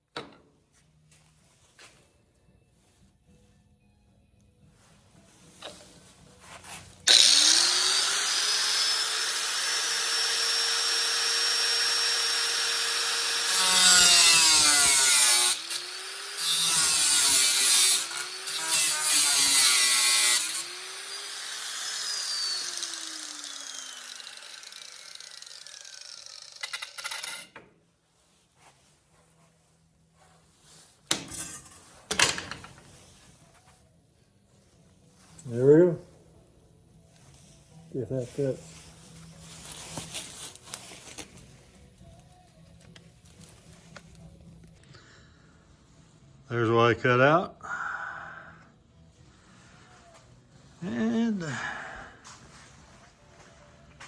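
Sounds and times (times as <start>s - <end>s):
angle grinder cutting metal: 7.1s - 27.5s.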